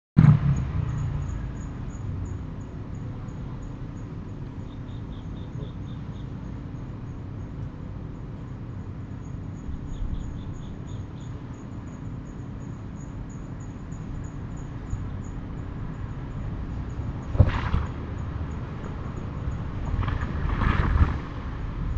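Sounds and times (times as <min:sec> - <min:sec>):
muffled rumbling and thudding: 0:17.2 - 0:21.9.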